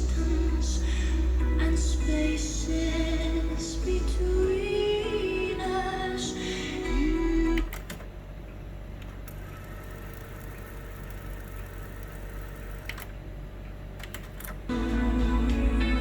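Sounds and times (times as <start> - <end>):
music playback: 0.0 - 7.8, 14.7 - 16.0
sharp mechanical clicks: 7.6 - 8.1, 9.0 - 13.2, 14.0 - 14.7
tape motor whirring: 9.2 - 13.2.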